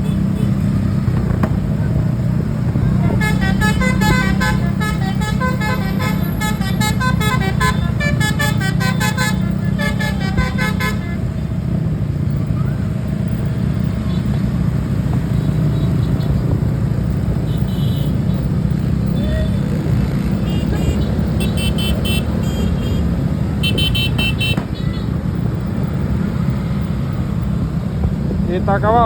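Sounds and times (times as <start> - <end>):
engine running: 0.0 - 29.0
musical bus horn playing melody: 2.8 - 11.5, 20.4 - 24.6.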